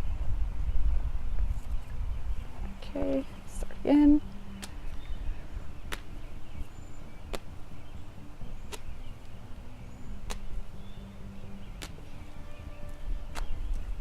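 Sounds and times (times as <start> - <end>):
whip swishing: 5.9 - 6.1, 8.7 - 8.9, 10.2 - 10.5, 11.8 - 12.1, 13.3 - 13.6.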